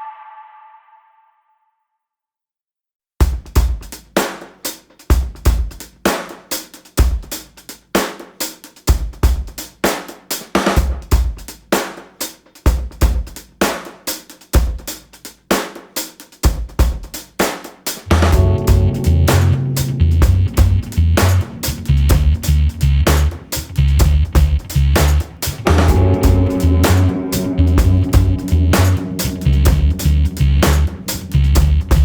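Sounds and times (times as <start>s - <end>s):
drum kit playing a steady beat: 3.2s - 32.0s
bass and other instruments: 18.0s - 32.0s.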